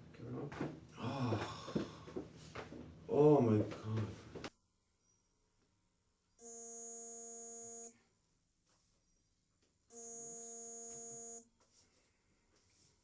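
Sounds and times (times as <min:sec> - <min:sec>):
steady electric buzz: 0:09.9 - 0:11.5.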